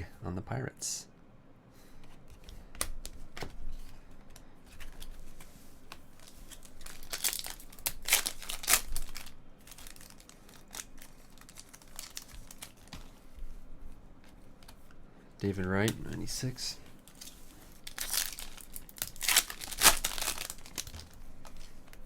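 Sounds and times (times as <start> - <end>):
wrappers tearing and crinkling: 6.2 - 12.9, 17.0 - 22.0.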